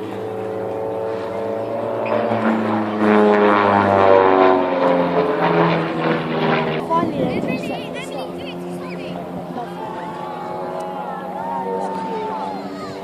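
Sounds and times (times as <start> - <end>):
propeller aircraft flying past: 0.0 - 13.0.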